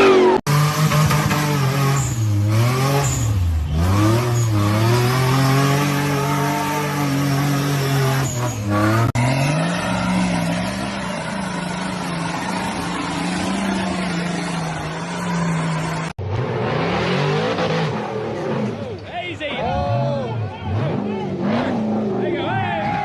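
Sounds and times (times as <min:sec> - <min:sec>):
off-road engines revving hard: 0:00.0 - 0:23.0.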